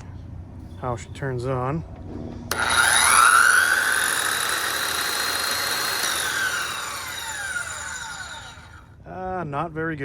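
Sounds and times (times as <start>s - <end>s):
electric saw motor whine: 2.5s - 8.9s.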